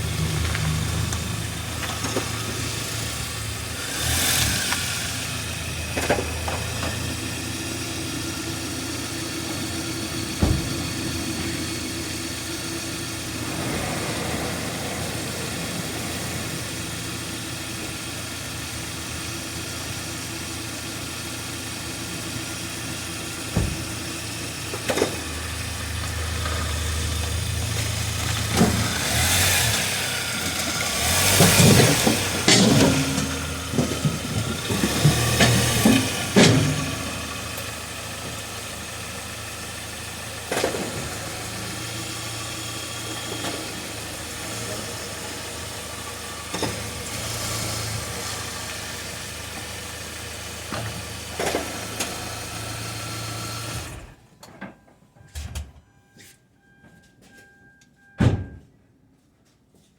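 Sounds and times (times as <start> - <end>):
car engine and road noise: 0.0 - 58.7
sharp knocks: 10.2 - 11.5.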